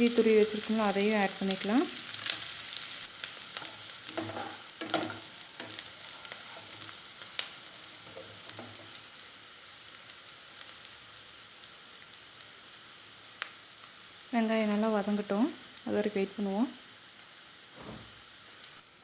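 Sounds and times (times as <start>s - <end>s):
vegetables sizzling in hot oil: 0.0s - 19.0s
spoon stirring in a pan: 3.5s - 9.0s.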